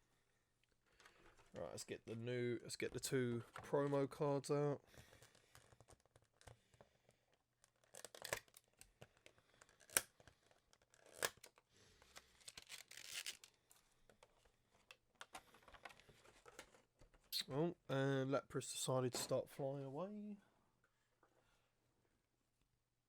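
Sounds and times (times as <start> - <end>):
plastic wrapper tearing and crinkling: 7.6 - 11.6, 12.2 - 13.6.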